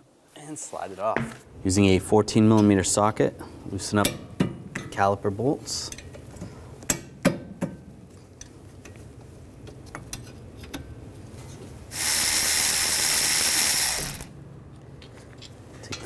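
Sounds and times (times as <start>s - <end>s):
power ratchet whirring: 11.9s - 14.3s.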